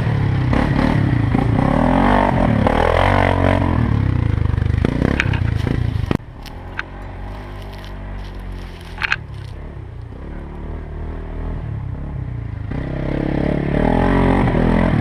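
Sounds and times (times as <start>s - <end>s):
atv engine running: 0.0s - 15.0s
sharp clicks and rattles: 5.0s - 10.2s.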